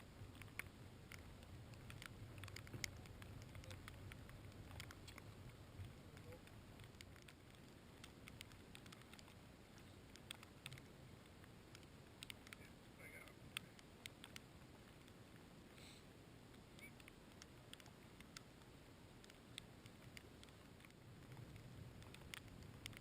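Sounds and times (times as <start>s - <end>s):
faint ticks and pattering: 0.0s - 23.0s
low steady rumble: 0.0s - 23.0s.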